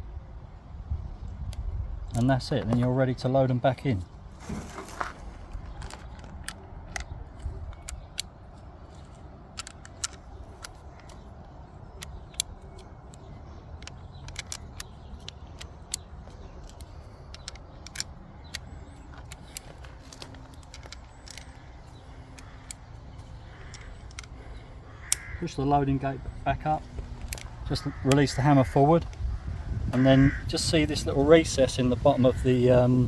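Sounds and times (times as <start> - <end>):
revolver cylinder clicking: 6.1 - 25.4
steady low rumble: 14.6 - 32.2.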